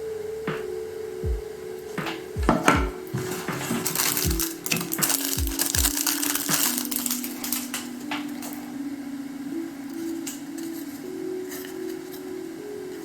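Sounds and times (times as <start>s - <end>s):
background music with held notes: 0.0s - 13.0s
packaging crinkling: 3.2s - 7.9s.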